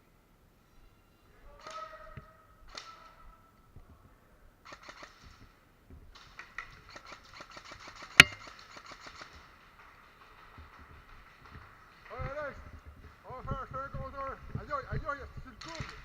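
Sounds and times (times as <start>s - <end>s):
sharp crack: 8.2s - 8.5s.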